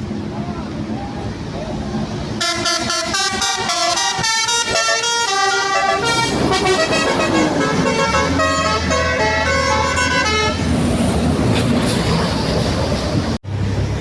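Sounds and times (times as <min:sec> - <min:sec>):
bus engine rumble: 0:00.0 - 0:14.0
bus multi-tone horn melody: 0:02.4 - 0:11.1.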